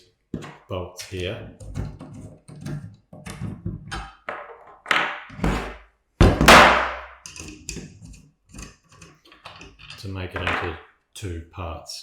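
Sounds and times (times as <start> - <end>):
metal parts knocking and clicking: 7.2 - 7.9.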